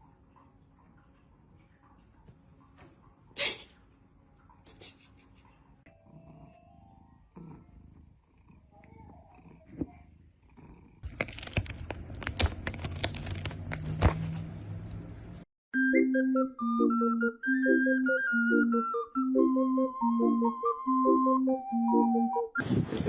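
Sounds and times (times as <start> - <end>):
cat purring: 5.9 - 11.1.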